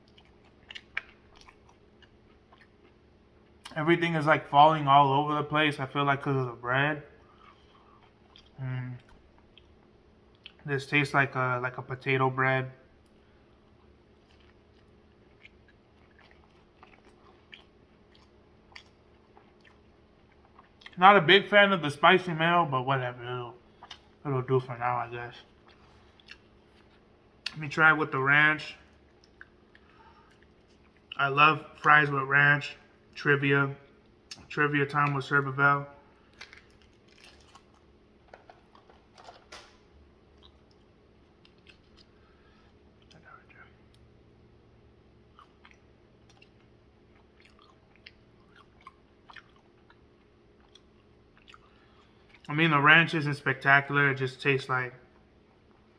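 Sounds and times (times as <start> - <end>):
faint chewing: 0.0 - 3.8, 7.1 - 10.7, 13.0 - 21.0, 23.6 - 24.2, 25.3 - 27.6, 28.8 - 32.0, 33.8 - 39.3, 40.3 - 44.1, 45.3 - 52.5
person eating quietly: 0.0 - 3.8, 7.1 - 10.7, 12.8 - 21.3, 23.0 - 44.2, 45.2 - 52.6
low room hum: 0.0 - 55.9.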